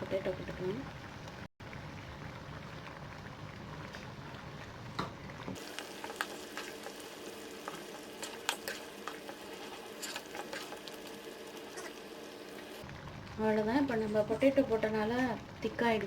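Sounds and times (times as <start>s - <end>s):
gravy bubbling in a pan: 0.0s - 16.0s.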